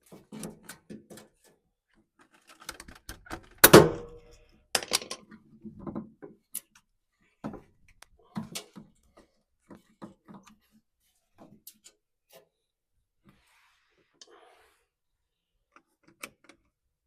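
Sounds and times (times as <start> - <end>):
parts and tools clicking: 4.8 - 5.4.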